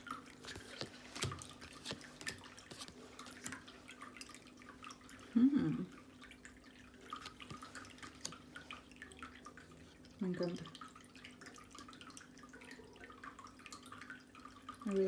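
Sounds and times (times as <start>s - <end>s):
cards tapping and clicking: 0.4s - 3.6s, 7.2s - 8.4s.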